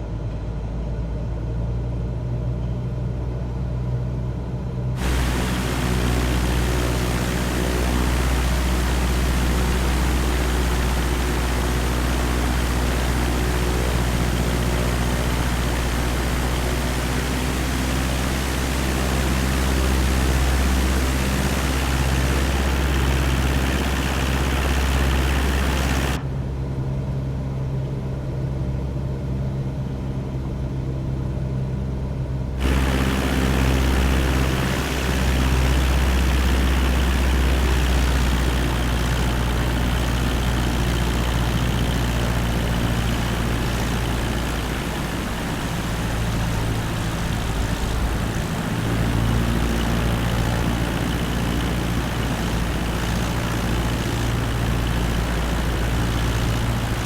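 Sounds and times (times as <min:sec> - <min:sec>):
propeller plane engine droning: 0:04.9 - 0:27.2, 0:29.9 - 0:57.0
loud steady hiss: 0:05.0 - 0:26.2, 0:32.6 - 0:57.0.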